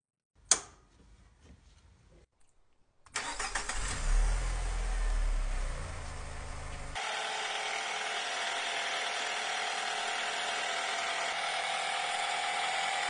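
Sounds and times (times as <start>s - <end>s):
car engine running: 3.8s - 9.5s.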